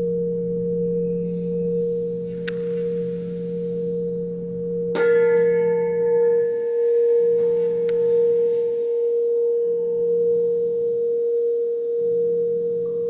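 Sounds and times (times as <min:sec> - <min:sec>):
tuned metal pipes ringing: 0:00.0 - 0:09.1.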